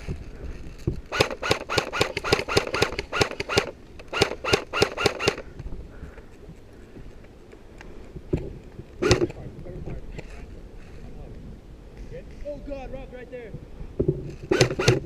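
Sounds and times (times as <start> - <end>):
airsoft gun shots: 1.1 - 5.4, 9.0 - 9.4, 14.5 - 15.0.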